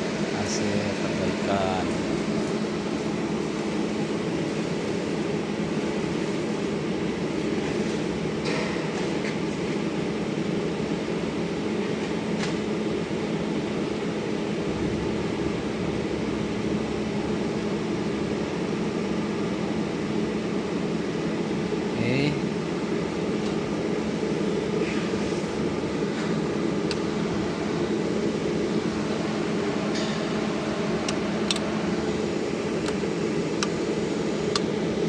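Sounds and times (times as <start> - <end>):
welding machine humming: 0.0 - 8.3.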